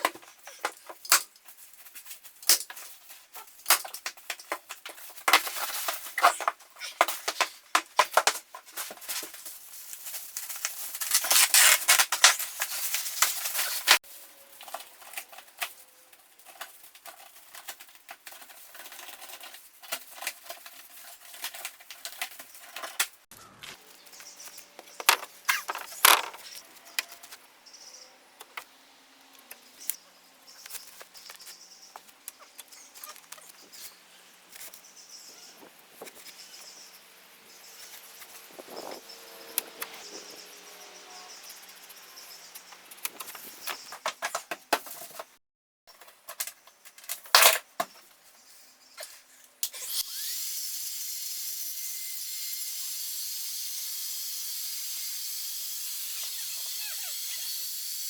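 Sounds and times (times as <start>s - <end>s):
knocks and clicks of tools: 24.8s - 27.2s.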